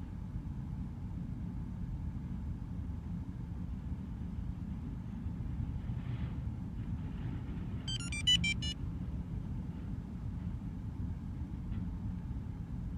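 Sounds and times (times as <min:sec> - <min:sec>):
short electronic beeps: 0:07.9 - 0:08.8.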